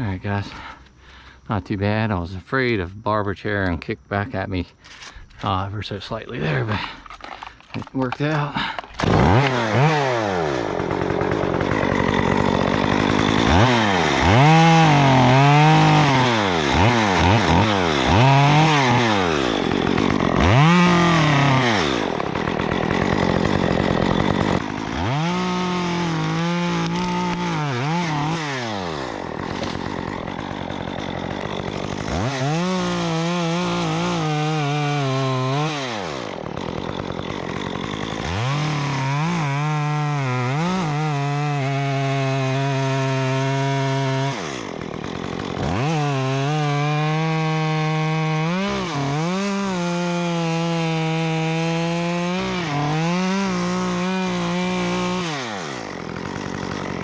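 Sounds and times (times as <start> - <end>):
chainsaw revving: 6.3 - 57.0.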